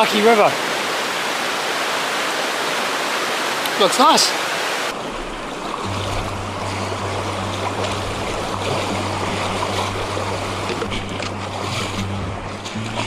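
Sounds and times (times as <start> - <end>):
rushing river water: 0.0 - 13.0
sustained low music note: 5.7 - 13.0.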